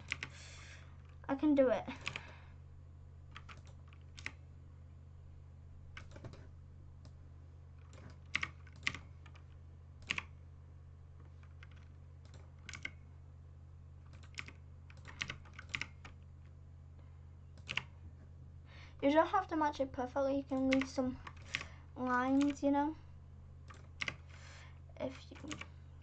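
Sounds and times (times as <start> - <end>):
computer keyboard keys clicking: 0.0 - 0.3, 2.0 - 2.3, 3.4 - 4.4, 6.0 - 6.4, 7.8 - 9.4, 10.0 - 10.3, 11.4 - 13.0, 14.1 - 16.2, 17.6 - 17.9, 20.6 - 21.7, 22.4 - 22.6, 23.7 - 24.4, 25.3 - 25.7
low electrical hum: 0.0 - 26.0.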